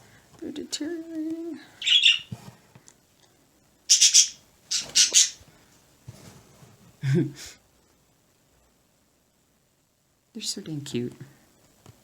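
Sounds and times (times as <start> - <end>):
pet birds squawking: 1.8 - 2.4, 3.9 - 5.4.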